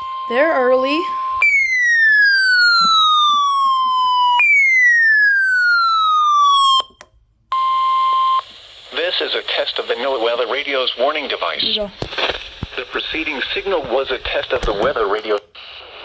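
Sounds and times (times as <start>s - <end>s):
steady alarm tone: 0.0s - 6.9s
electronic siren falling sweeps: 1.4s - 6.9s.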